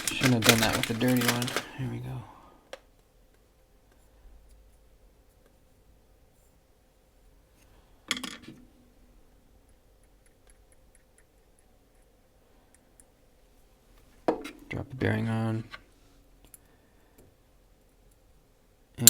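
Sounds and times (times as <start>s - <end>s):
handling small knife parts: 0.0s - 1.8s.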